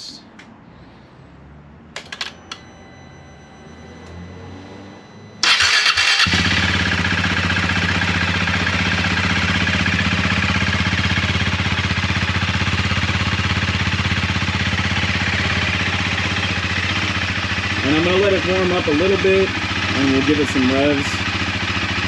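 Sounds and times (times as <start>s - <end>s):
starter motor cranking: 5.4s - 6.5s
motorcycle engine idling: 5.4s - 22.0s.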